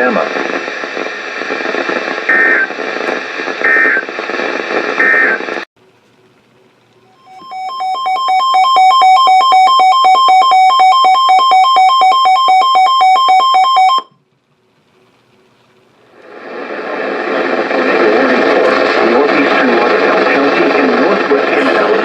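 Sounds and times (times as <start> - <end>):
radio hiss: 0.0 - 5.7, 16.1 - 22.0
data tone bursts: 7.1 - 14.1.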